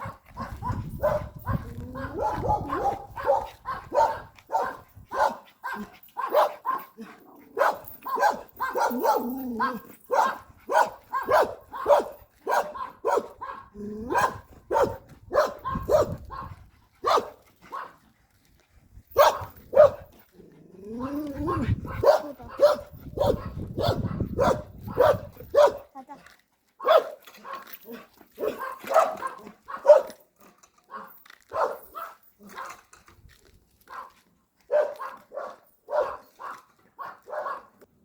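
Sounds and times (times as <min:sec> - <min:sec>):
dog barking quickly: 0:00.0 - 0:06.8, 0:10.2 - 0:16.5, 0:21.9 - 0:25.8.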